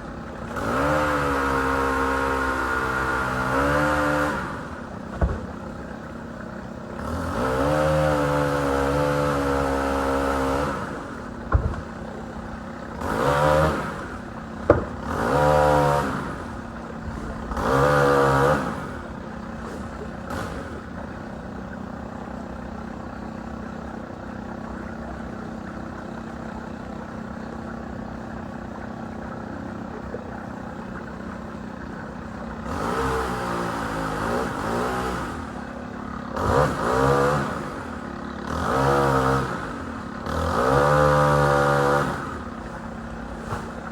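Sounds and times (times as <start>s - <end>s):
chainsaw revving: 0.0s - 22.7s, 32.6s - 43.9s
sharp knocks: 5.1s - 5.7s, 11.4s - 12.1s, 14.6s - 15.6s.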